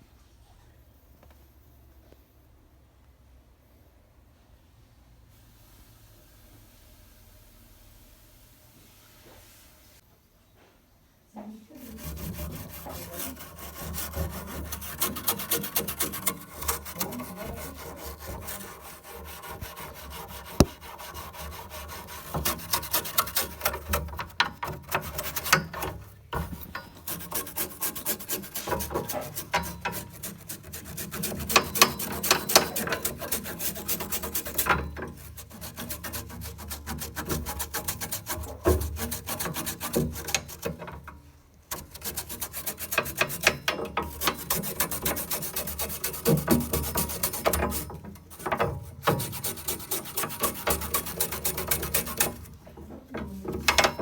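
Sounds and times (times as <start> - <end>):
scrubbing and scraping: 11.7 - 54.0.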